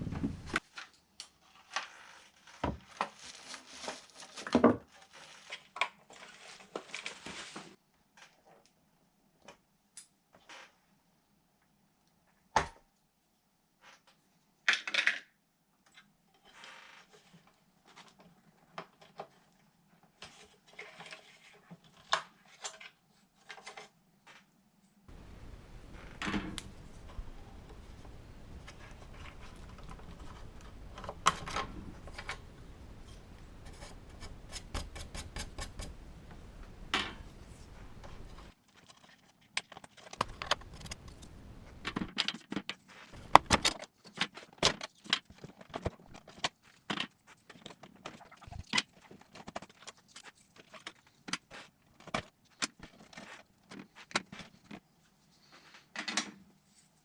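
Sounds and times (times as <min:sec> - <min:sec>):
faint low hum: 0:25.1 - 0:38.5.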